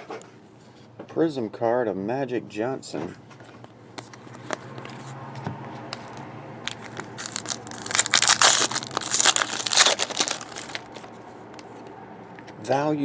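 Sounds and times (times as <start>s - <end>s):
foil wrapper tearing and crinkling: 6.7s - 11.7s.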